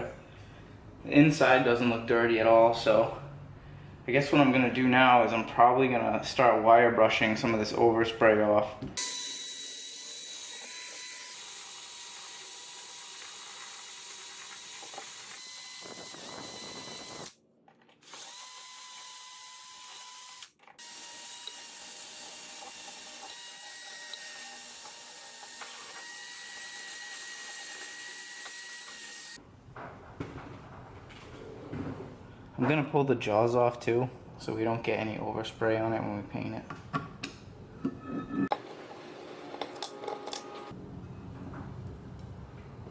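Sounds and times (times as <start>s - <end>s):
motor whining: 14.4s - 17.3s.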